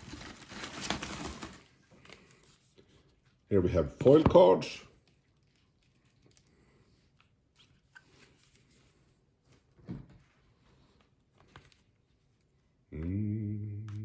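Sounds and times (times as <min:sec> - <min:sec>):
playing cards rustling: 0:00.0 - 0:03.4, 0:04.1 - 0:09.8, 0:10.7 - 0:12.6.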